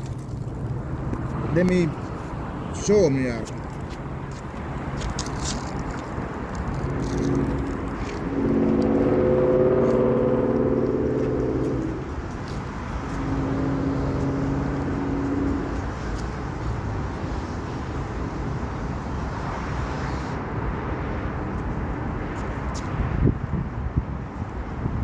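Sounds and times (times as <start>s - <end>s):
engine hum: 0.0s - 22.2s
road traffic: 0.0s - 25.0s.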